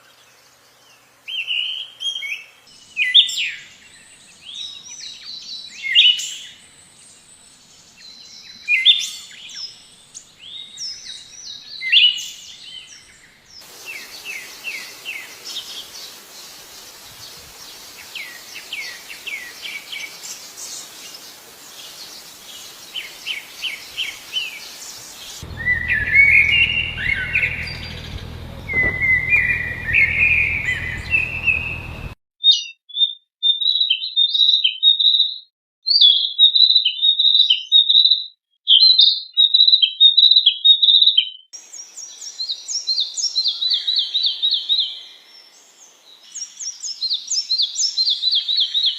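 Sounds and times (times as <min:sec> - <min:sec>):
songbirds singing: 0:00.0 - 0:32.8, 0:38.8 - 0:48.9
hiss: 0:13.6 - 0:32.1
low steady hum: 0:25.3 - 0:32.2.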